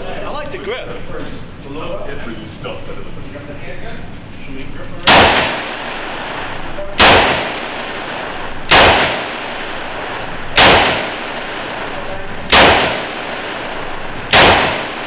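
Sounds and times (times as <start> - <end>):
revolver shots echoing: 5.0 - 15.0.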